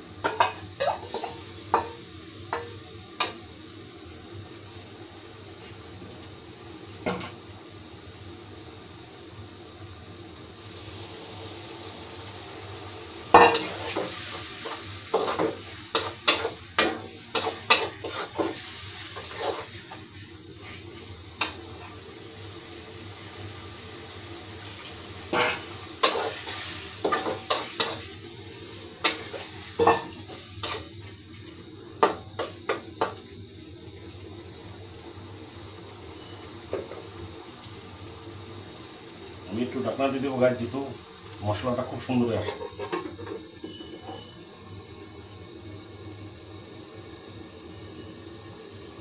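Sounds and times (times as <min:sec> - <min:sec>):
faint sizzle: 0:00.0 - 0:49.0
metal spoon scraping cooking pan: 0:00.2 - 0:02.7, 0:13.4 - 0:20.0, 0:25.3 - 0:28.1, 0:29.0 - 0:30.9, 0:42.4 - 0:44.3.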